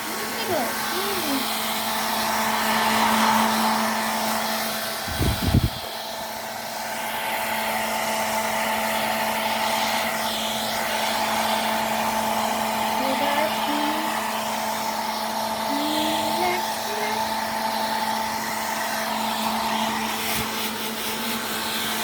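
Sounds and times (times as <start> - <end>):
hair dryer running: 0.0 - 22.0.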